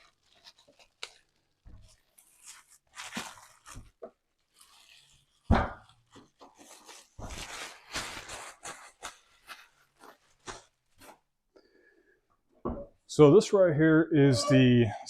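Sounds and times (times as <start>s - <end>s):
packaging crunching and tearing: 0.0s - 11.0s.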